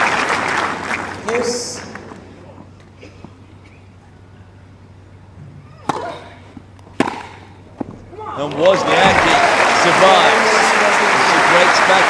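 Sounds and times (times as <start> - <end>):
low background hum: 0.0 - 12.0
tennis racket hitting ball: 7.0 - 7.5.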